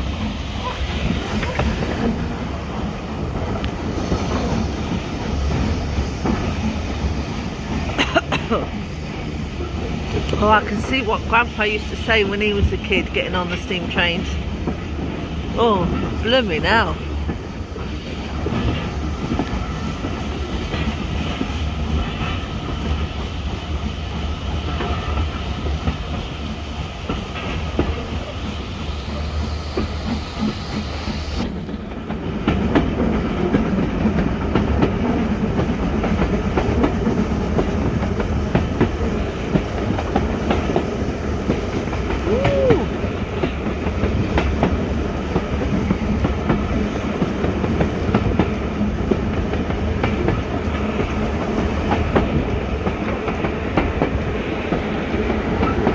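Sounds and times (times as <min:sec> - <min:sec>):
train wheels rumbling on rails: 0:00.0 - 0:55.9
hiss: 0:26.4 - 0:31.5.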